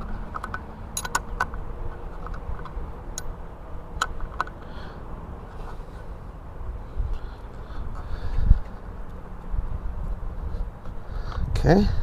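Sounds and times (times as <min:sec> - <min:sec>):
low steady rumble: 0:00.0 - 0:12.0
wrench clicking on metal: 0:00.4 - 0:01.5.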